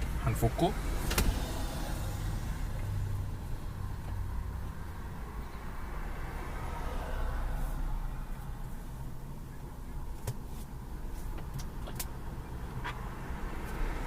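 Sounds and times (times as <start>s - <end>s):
vehicle idling hum: 7.0s - 14.0s.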